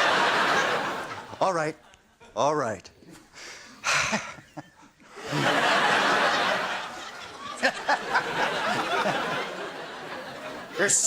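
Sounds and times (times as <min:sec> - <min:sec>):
audience laughing: 0:00.0 - 0:01.6, 0:03.8 - 0:11.0.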